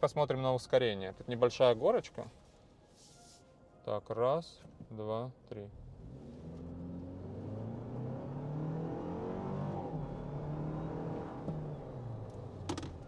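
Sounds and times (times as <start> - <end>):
car engine accelerating: 5.8 - 13.0.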